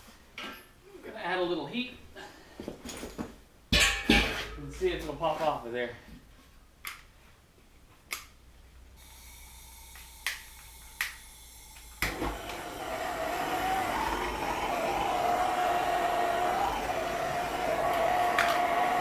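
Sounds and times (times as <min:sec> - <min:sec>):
heating tool running: 0:09.0 - 0:19.0.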